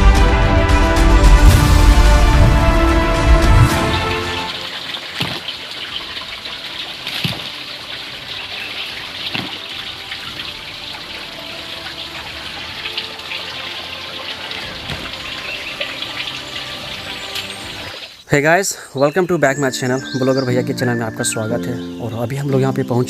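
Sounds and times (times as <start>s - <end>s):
flowing water rushing: 0.9s - 18.3s.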